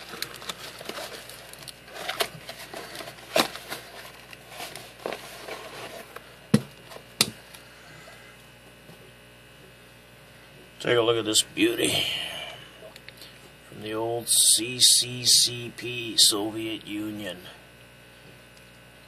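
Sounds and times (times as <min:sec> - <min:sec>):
packaging rustling: 0:00.0 - 0:07.2
taps and knocks of packaging: 0:06.5 - 0:07.4.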